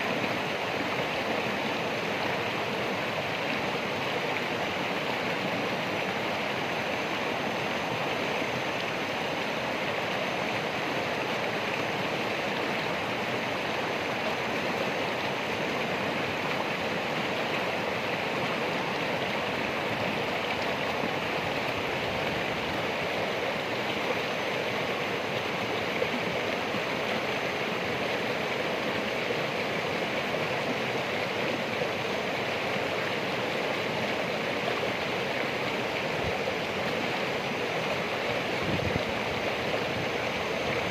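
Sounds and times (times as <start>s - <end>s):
stream water rushing: 0.0s - 40.9s.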